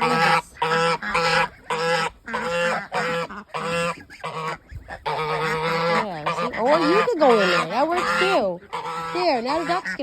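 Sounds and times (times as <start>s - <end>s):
goose honking: 0.0s - 10.0s.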